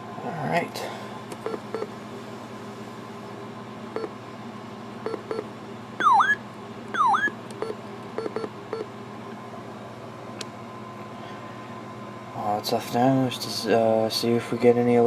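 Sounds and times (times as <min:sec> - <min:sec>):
steady electronic hum: 0:00.0 - 0:15.0
loud swooping electronic chirps: 0:06.0 - 0:06.4.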